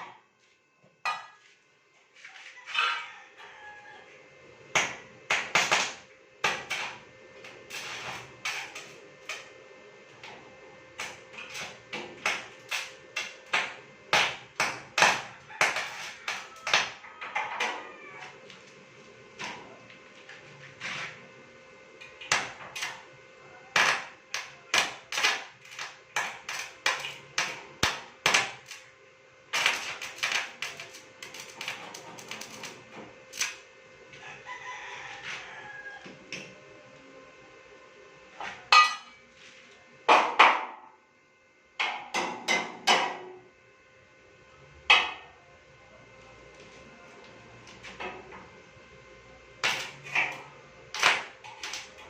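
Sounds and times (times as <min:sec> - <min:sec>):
rooster crowing: 0:02.4 - 0:04.2, 0:15.2 - 0:18.4, 0:34.1 - 0:36.3
hammer striking metal: 0:38.7 - 0:39.2.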